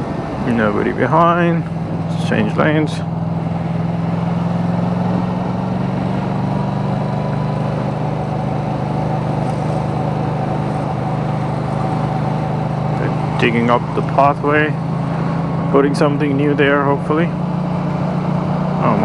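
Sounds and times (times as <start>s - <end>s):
motorcycle engine running: 0.0s - 19.0s
wind and road noise: 0.0s - 19.0s.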